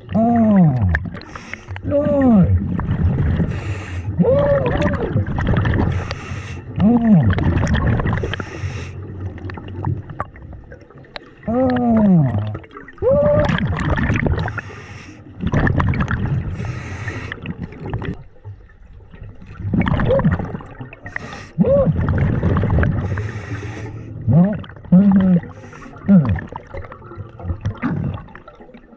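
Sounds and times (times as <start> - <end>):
gurgling exhaled bubbles: 0.0 - 28.9
hissing regulator breaths: 5.9 - 6.7, 8.2 - 9.0, 14.5 - 15.3, 16.6 - 17.4, 23.0 - 24.1.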